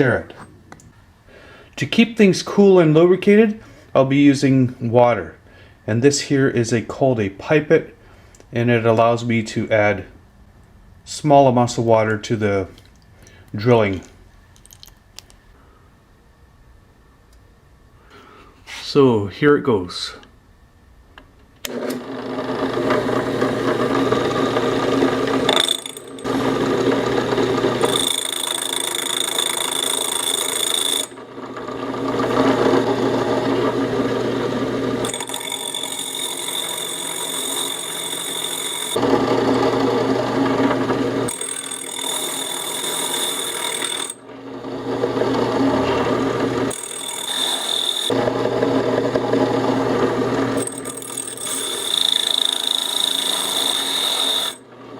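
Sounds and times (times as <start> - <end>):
power drill cutting glass: 21.7 - 54.6.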